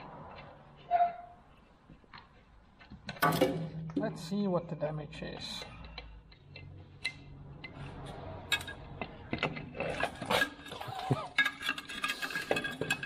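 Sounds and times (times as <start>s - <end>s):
metallic clinks and knocks: 5.5s - 13.0s.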